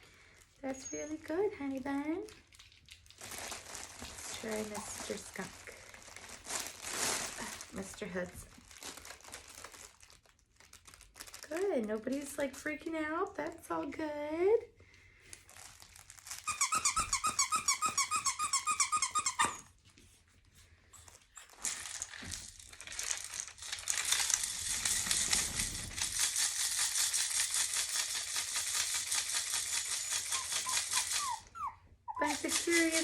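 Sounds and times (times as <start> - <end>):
crinkle toy crinkling: 0.0 - 13.6, 15.2 - 19.5, 21.0 - 31.6, 32.2 - 33.0
squeaky dog toy squeaking: 16.3 - 19.8, 30.0 - 33.0.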